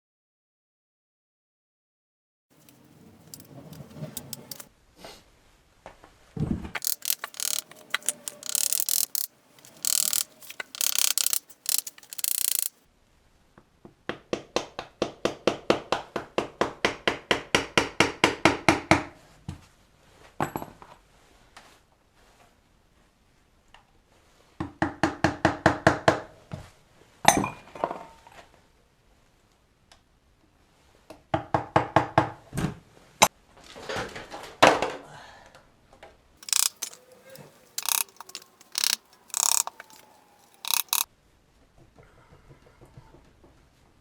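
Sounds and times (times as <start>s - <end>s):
ratchet wrench clicking: 2.6s - 4.6s, 6.8s - 12.7s, 36.4s - 41.1s.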